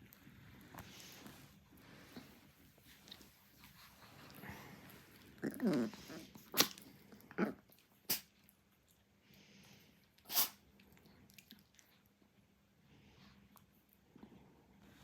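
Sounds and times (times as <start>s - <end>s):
dog wavering vocal sound: 5.4s - 6.4s.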